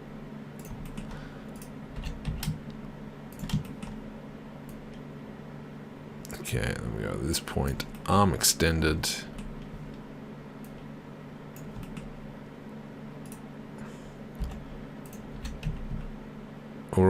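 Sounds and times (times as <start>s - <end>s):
steady low hum: 0.0s - 17.0s
computer keyboard clicks: 0.6s - 2.6s, 3.3s - 4.0s, 11.6s - 12.1s, 14.4s - 16.1s.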